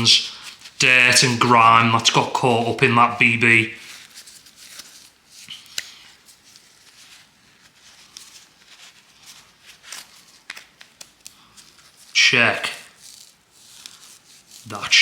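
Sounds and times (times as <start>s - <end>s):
rubbing and wiping metal: 12.9s - 15.0s.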